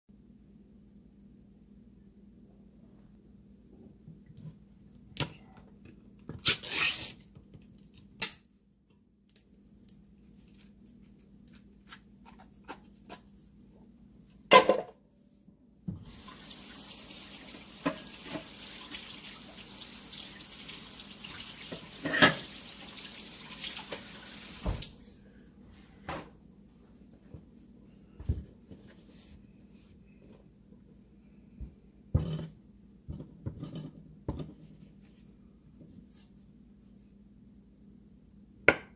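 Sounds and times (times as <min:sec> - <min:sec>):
tap running into sink: 0:23.8 - 0:24.9.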